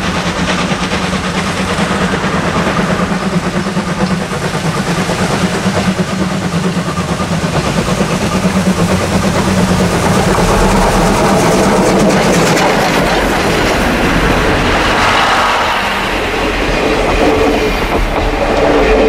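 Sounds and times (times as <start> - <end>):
rail clatter: 0.0 - 19.0
steam locomotive and train passing: 0.0 - 19.0
deep rumble: 7.4 - 19.0.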